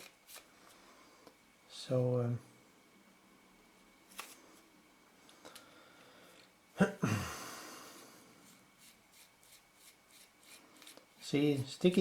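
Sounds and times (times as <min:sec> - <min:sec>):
person sighing: 0:06.8 - 0:08.2.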